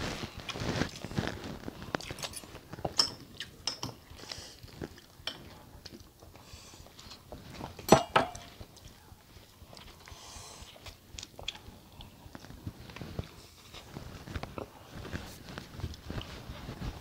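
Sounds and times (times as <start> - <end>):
cutlery clinking on plates: 2.1 - 4.0, 7.8 - 8.6.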